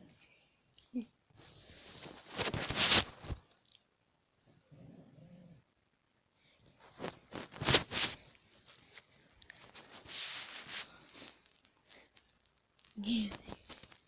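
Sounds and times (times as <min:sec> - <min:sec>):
crackling clicks: 0:11.0 - 0:14.0.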